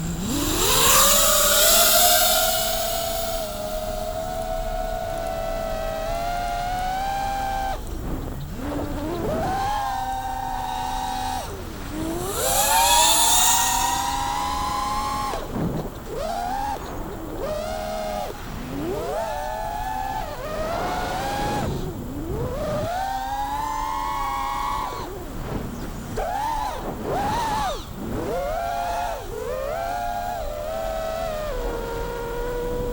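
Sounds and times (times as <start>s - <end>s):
loud rushing hiss: 0.0s - 4.7s, 11.4s - 15.6s
drone motors whining: 0.0s - 6.2s, 8.4s - 18.2s.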